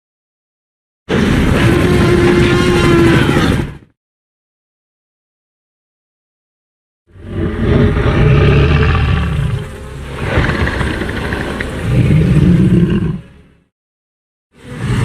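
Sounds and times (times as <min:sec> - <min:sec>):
deep rasping dinosaur roar: 0:07.1 - 0:13.3.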